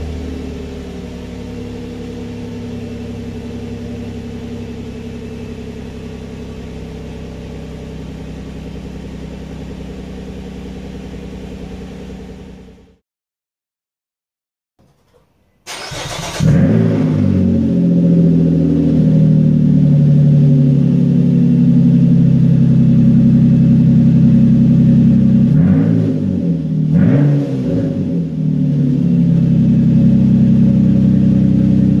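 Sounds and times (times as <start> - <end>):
loud car engine idling: 0.0 - 13.0, 17.8 - 25.6, 28.2 - 32.0
car engine cranking: 14.8 - 16.9
engine throttle blips: 15.7 - 18.0, 29.1 - 32.0.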